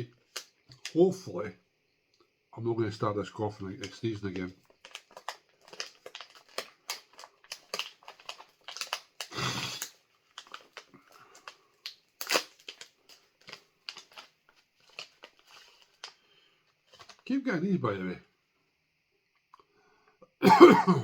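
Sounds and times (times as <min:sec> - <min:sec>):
crunchy chewing: 0:04.6 - 0:16.2.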